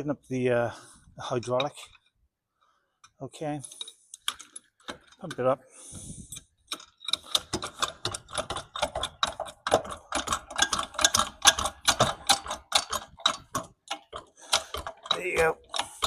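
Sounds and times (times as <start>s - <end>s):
hydraulic jack pumping clicks: 6.3s - 16.0s.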